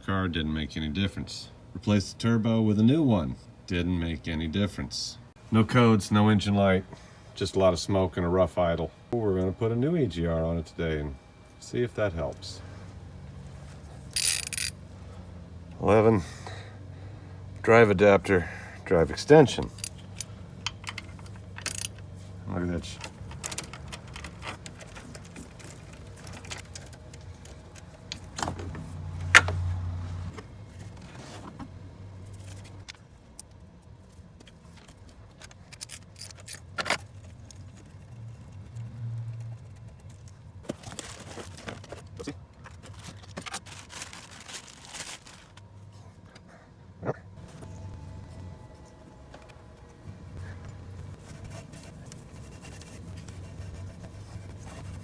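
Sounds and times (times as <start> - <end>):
socket tools clinking on metal: 14.1 - 14.8, 19.6 - 22.1.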